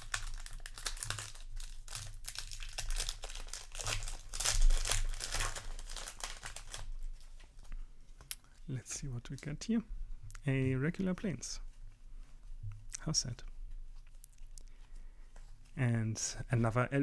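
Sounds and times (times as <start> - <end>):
foil wrapper crinkling: 0.0 - 7.5.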